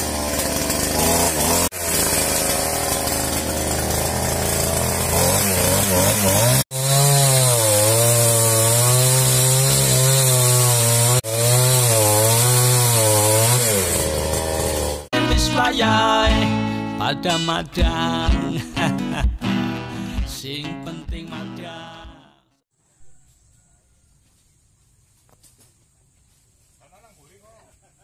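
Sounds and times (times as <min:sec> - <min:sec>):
chainsaw cutting wood: 0:00.0 - 0:16.8.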